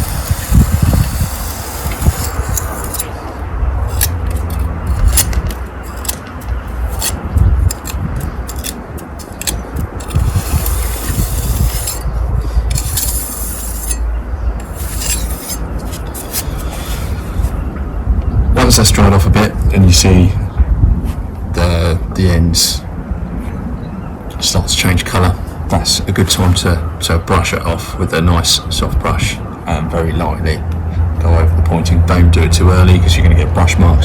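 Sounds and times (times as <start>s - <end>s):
pointing tool scraping mortar: 0.0s - 3.2s, 3.9s - 14.0s, 14.6s - 17.6s
wind rumble on microphone: 0.0s - 34.0s.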